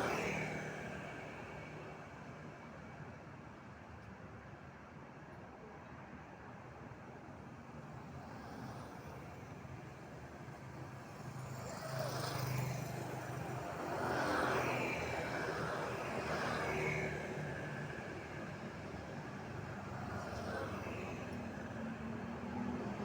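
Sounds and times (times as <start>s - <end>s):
vehicles passing by: 10.6s - 23.0s.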